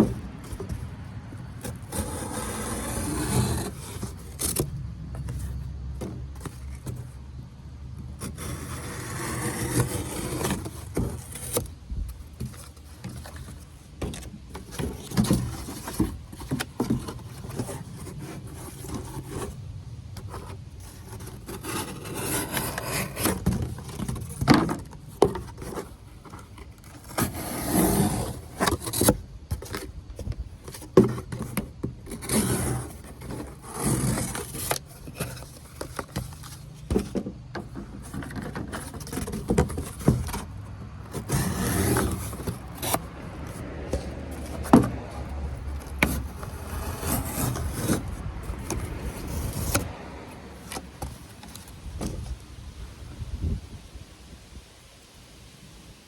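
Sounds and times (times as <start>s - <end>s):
knife scraping wood: 1.6s - 5.4s, 8.2s - 11.8s, 20.2s - 29.9s, 30.8s - 52.3s.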